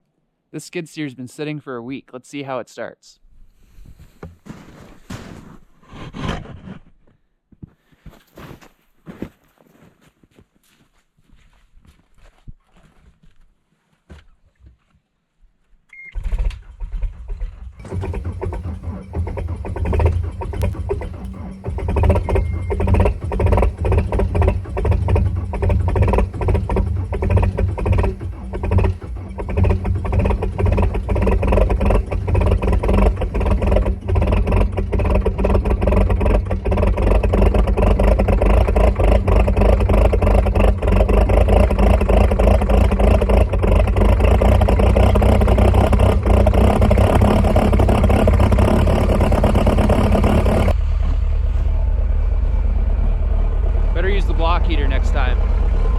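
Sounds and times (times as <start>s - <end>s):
diesel engine running: 17.6s - 55.9s.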